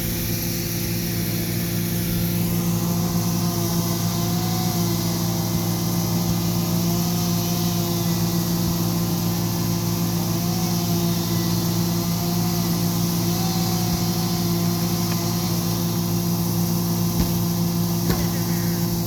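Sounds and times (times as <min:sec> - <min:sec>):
engine humming steadily: 0:00.0 - 0:19.0.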